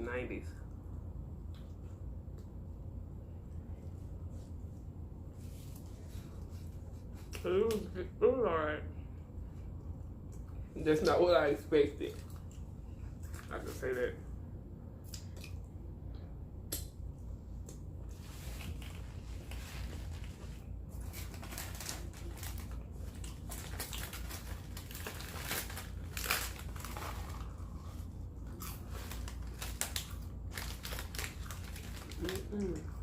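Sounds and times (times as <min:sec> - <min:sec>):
chewing crunchy food: 0:12.0 - 0:13.6, 0:21.0 - 0:33.0.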